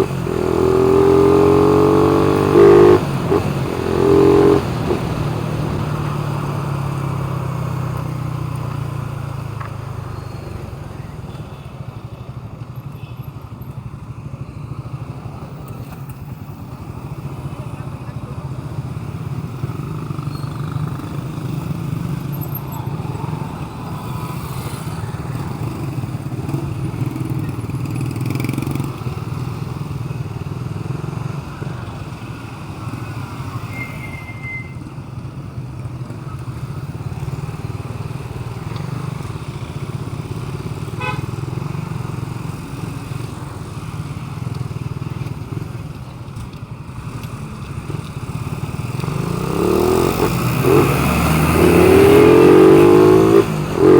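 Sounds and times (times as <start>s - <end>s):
short high beep: 33.6s - 34.9s.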